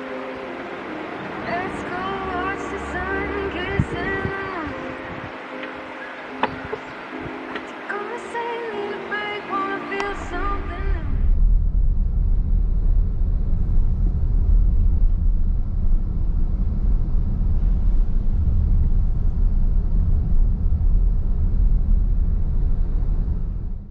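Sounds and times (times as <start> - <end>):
loud low rumble: 10.1 - 23.9.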